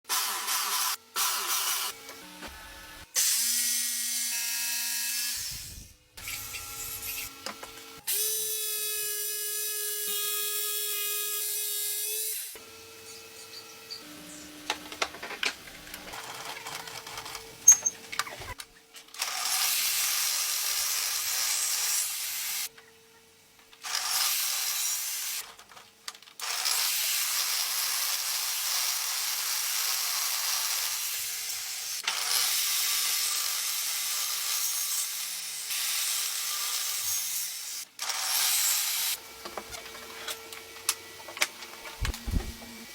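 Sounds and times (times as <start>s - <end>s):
electric motors whining: 5.4s - 8.0s.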